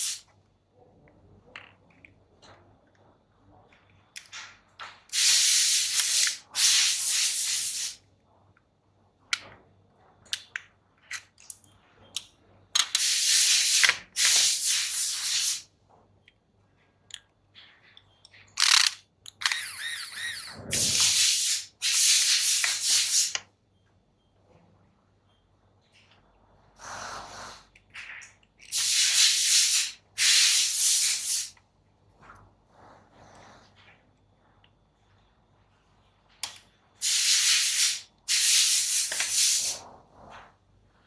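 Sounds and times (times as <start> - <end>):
hissing spray bursts: 0.0 - 0.2, 5.1 - 8.0, 13.0 - 15.6, 20.7 - 23.4, 28.7 - 31.5, 37.0 - 39.8.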